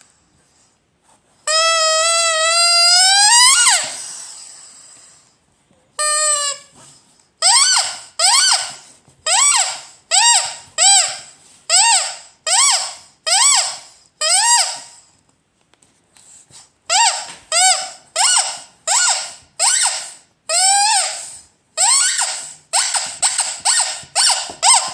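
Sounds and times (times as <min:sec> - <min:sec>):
rubber squeaky toy squeaking: 0:01.5 - 0:04.1, 0:06.0 - 0:06.7, 0:07.4 - 0:15.0, 0:16.9 - 0:24.9.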